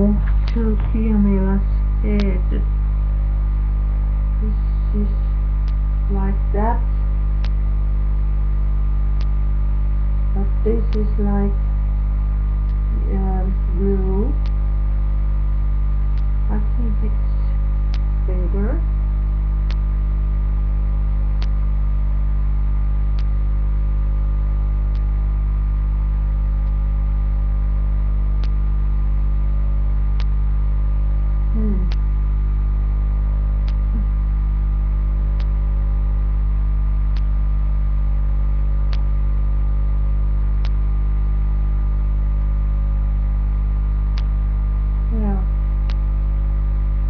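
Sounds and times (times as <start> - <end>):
electrical mains hum: 0.0 - 47.0
faint click: 16.1 - 16.3, 19.6 - 19.9, 21.4 - 21.6, 37.1 - 37.4, 40.6 - 40.8, 44.1 - 44.4, 45.8 - 46.0.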